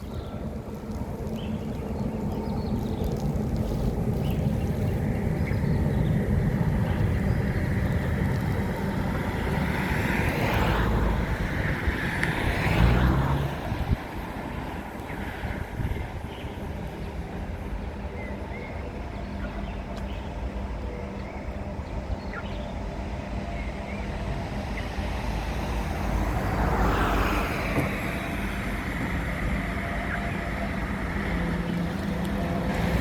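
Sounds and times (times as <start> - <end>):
distant road traffic rumble: 0.0 - 33.0.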